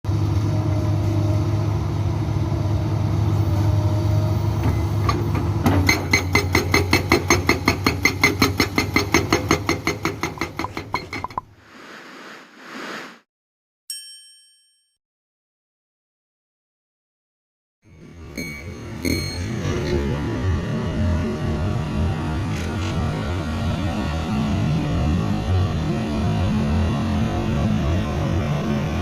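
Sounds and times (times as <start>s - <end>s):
excavator diesel engine running: 0.1s - 11.4s
hydraulic breaker hammering rock: 5.1s - 11.3s
short ringing chime: 13.9s - 15.0s, 18.4s - 19.6s.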